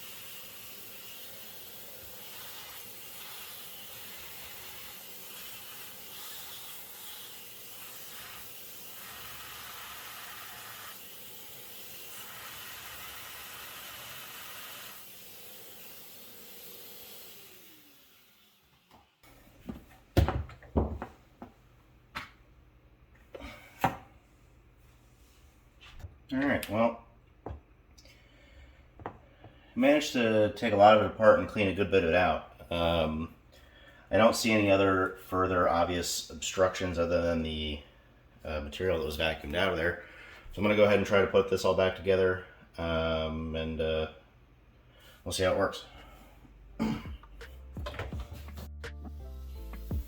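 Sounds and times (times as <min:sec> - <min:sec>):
shop vac running: 0:00.0 - 0:21.0.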